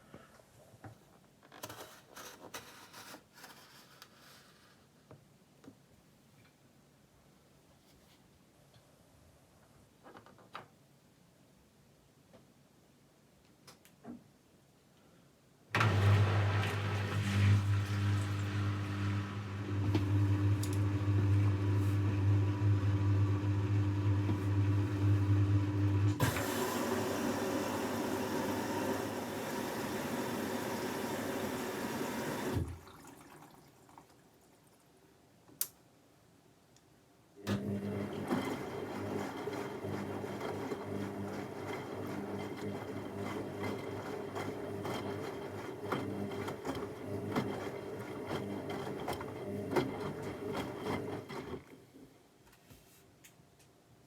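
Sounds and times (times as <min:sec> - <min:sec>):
washing machine hum: 0:15.7 - 0:34.9, 0:37.4 - 0:52.0.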